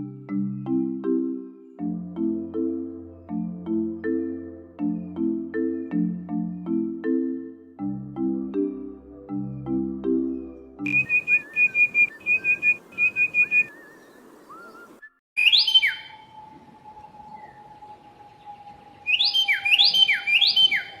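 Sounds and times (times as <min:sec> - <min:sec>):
bird short high repeated notes: 0:10.9 - 0:13.8, 0:19.1 - 0:21.0
bird whistled calls sliding downward: 0:10.9 - 0:21.0.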